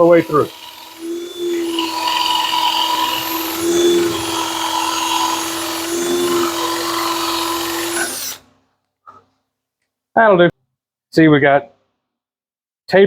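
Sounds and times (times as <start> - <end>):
power drill boring into wood: 0.0 - 8.5.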